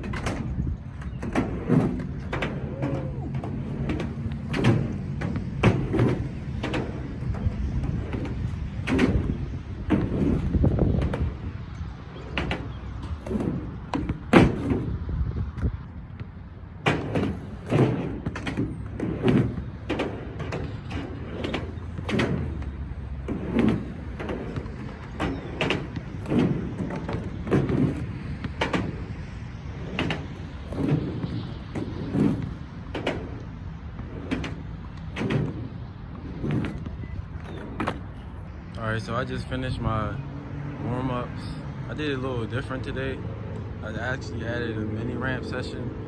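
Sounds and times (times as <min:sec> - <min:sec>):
skateboard wheels rolling: 0:00.0 - 0:46.0
skateboard clacks and knocks: 0:12.2 - 0:15.0, 0:16.8 - 0:29.1.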